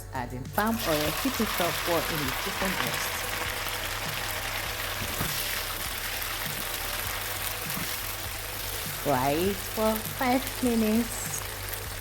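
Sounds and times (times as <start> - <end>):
chicken sizzling in frying pan: 0.7 - 12.0.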